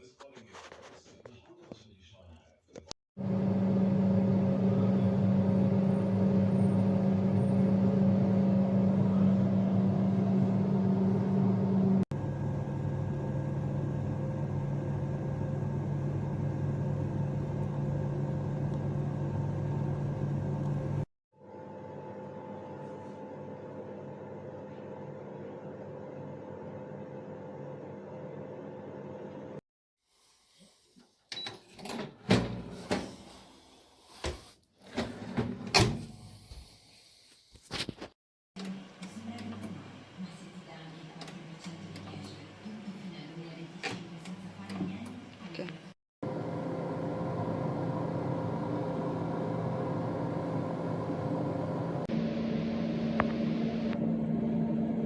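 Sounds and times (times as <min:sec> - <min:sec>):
air fryer fan humming: 0:03.2 - 0:21.0, 0:46.3 - 0:55.0.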